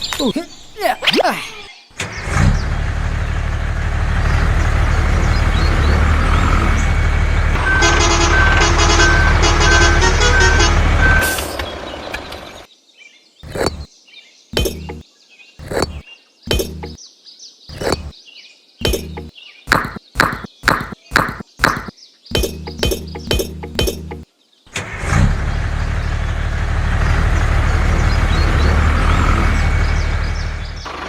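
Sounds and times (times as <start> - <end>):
truck engine running: 2.3 - 12.6, 14.6 - 15.0, 15.6 - 17.0, 18.8 - 19.3, 22.3 - 24.2, 24.9 - 31.0
reversing alarm beeping: 7.0 - 11.5.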